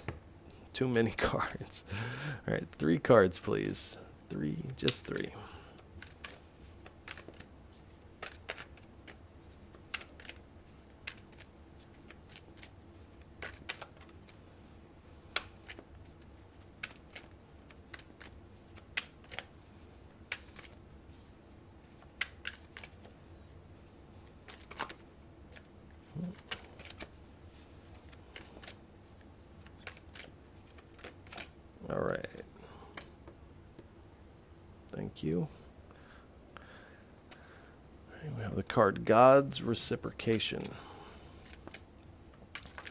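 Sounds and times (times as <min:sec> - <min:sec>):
faint steady hum: 0:00.0 - 0:42.9
cards being shuffled: 0:03.4 - 0:34.2, 0:41.4 - 0:42.9.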